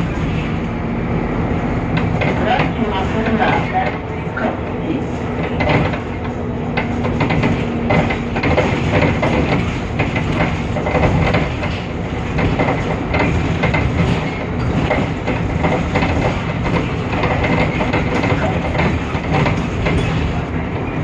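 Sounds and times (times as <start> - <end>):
bus diesel engine running: 0.0 - 21.0
road noise: 0.0 - 21.0
rattles and knocks: 5.2 - 20.9.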